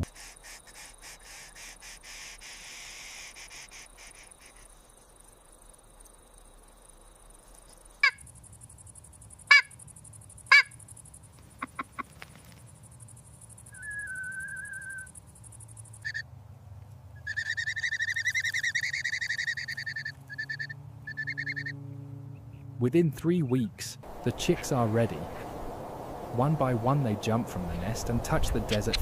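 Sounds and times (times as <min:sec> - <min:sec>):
bird rapid trill: 0:00.0 - 0:04.8, 0:13.1 - 0:16.2, 0:17.2 - 0:21.8
birds calling: 0:00.0 - 0:04.9, 0:13.7 - 0:16.3, 0:17.1 - 0:22.8
high insect buzz: 0:00.0 - 0:16.2
wavering whistle: 0:13.7 - 0:15.1, 0:17.3 - 0:21.8.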